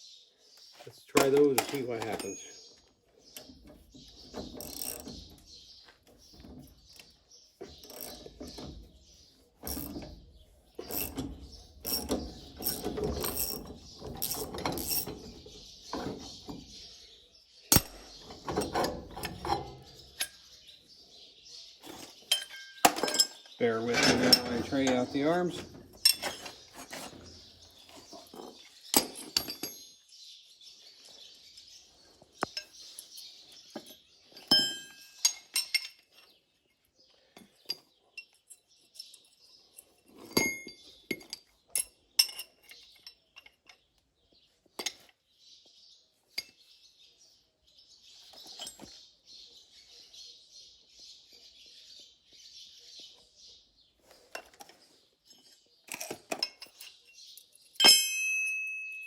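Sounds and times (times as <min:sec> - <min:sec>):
metal tools clinking: 0:01.1 - 0:05.7, 0:06.4 - 0:09.0, 0:09.6 - 0:16.9, 0:17.7 - 0:20.8, 0:21.8 - 0:30.1, 0:32.4 - 0:36.5, 0:37.4 - 0:44.0, 0:48.3 - 0:49.0, 0:54.3 - 0:59.0.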